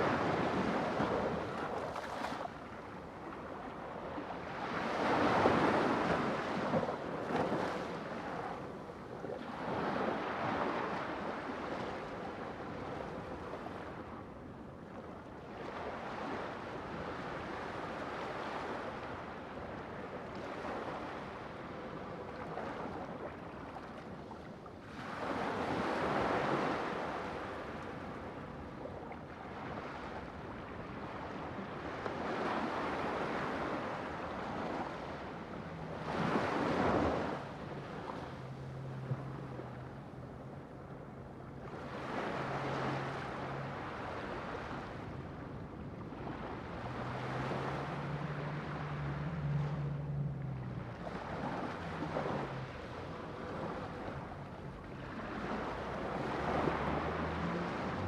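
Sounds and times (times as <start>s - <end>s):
sea waves washing on shore: 15.6s - 58.0s.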